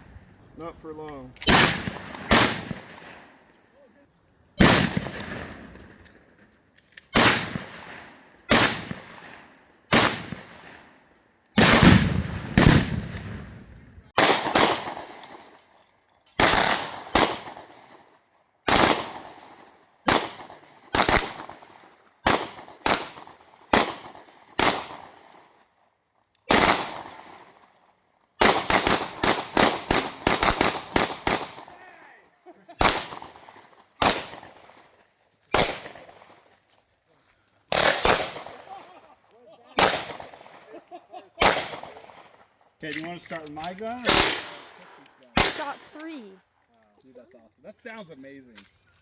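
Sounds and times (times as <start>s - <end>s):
gunshots with echo: 11.6s - 13.6s, 37.7s - 38.7s, 44.0s - 44.8s, 45.4s - 45.8s.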